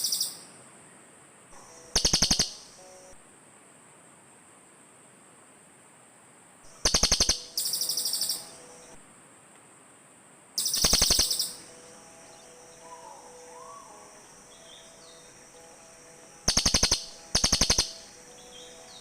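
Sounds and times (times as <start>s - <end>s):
bird rattling trills: 1.9s - 2.8s, 6.7s - 8.5s, 10.6s - 11.7s, 16.4s - 18.2s
high fast chattering trill: 1.9s - 2.8s, 10.6s - 11.6s, 16.5s - 18.1s.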